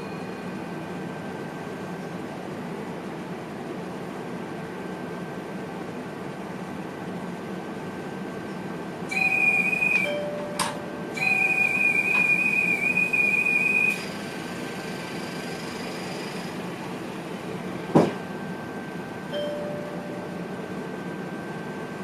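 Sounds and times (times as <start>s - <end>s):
train running noise: 8.2s - 22.0s
electronic warning tone: 9.1s - 10.6s, 11.2s - 14.3s.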